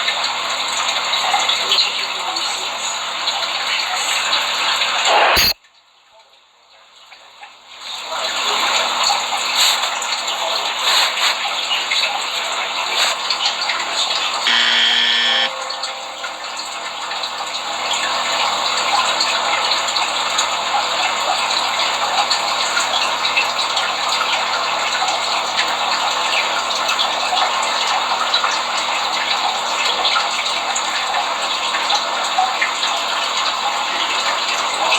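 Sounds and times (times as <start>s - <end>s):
loud rushing hiss: 5.1s - 5.6s.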